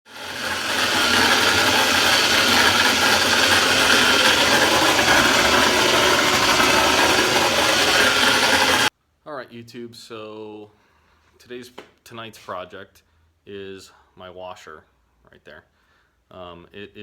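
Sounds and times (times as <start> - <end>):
washing machine grinding on spin: 0.0 - 8.9.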